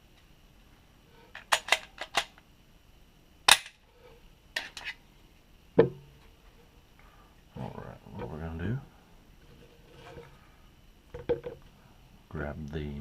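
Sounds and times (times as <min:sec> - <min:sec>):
pistol parts clicking: 0:01.4 - 0:02.4, 0:03.5 - 0:03.8.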